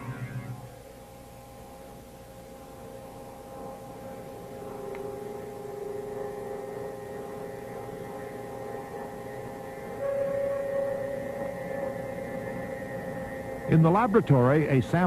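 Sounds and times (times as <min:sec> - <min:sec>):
high synthesizer tone: 0:00.0 - 0:00.8, 0:09.8 - 0:14.6
synthesizer drone tones: 0:00.0 - 0:15.0.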